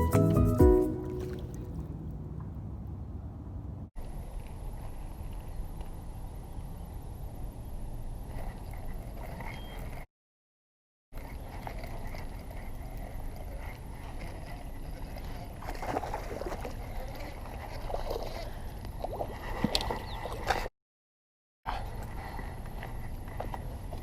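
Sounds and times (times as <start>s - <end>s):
water splashing and sloshing: 0.0s - 2.9s, 11.2s - 20.7s.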